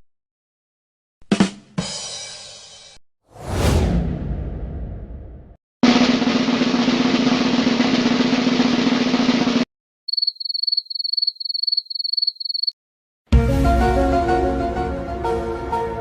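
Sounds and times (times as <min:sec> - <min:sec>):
music: 0:01.2 - 0:03.0, 0:05.8 - 0:09.6, 0:13.3 - 0:16.0
snare drum roll: 0:05.8 - 0:09.7
cricket chirping: 0:10.1 - 0:12.8.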